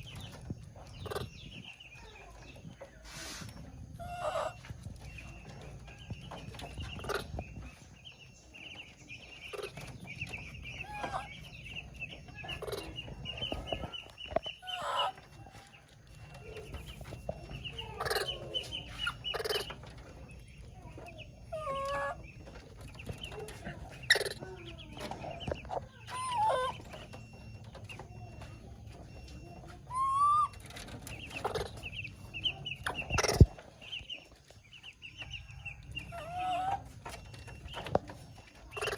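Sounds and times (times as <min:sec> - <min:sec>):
baby monkey whistling calls: 0:29.9 - 0:30.6.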